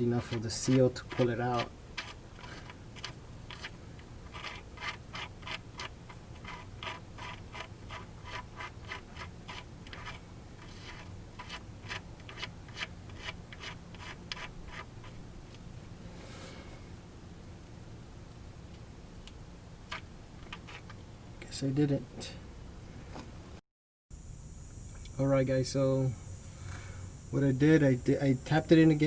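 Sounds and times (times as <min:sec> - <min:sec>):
metallic clicks and scrapes: 0:00.0 - 0:15.2, 0:19.9 - 0:21.0.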